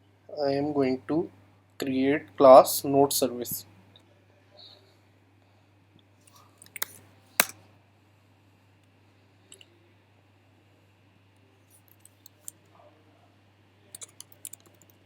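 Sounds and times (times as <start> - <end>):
computer mouse clicks: 14.0 - 15.0.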